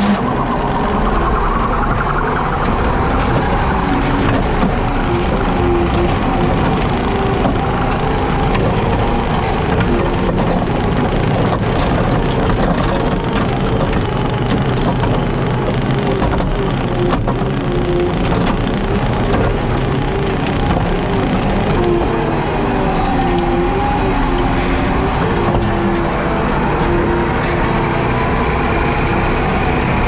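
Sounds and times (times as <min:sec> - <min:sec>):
diesel engine drone: 0:00.0 - 0:30.0
mower wavering whine: 0:00.0 - 0:30.0.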